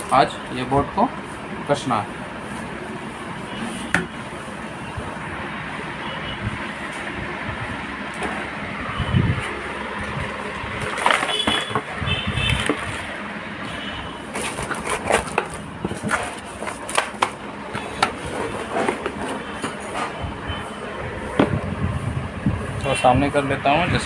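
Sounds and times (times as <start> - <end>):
steady background noise: 0.0 - 24.0
dull thumps on metal cabinet: 21.4 - 21.7.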